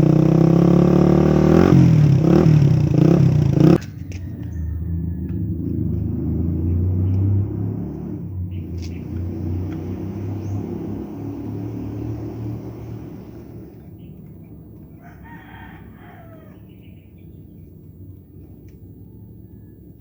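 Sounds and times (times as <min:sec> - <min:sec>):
motorcycle engine revving and idling: 0:00.0 - 0:14.9.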